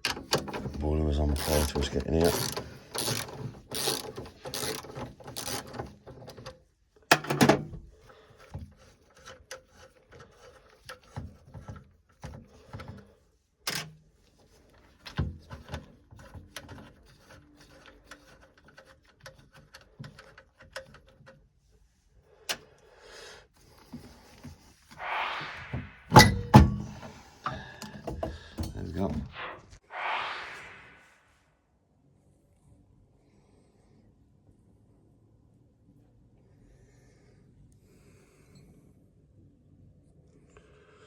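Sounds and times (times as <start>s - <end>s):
tools and metal parts rattling: 1.4s - 6.5s.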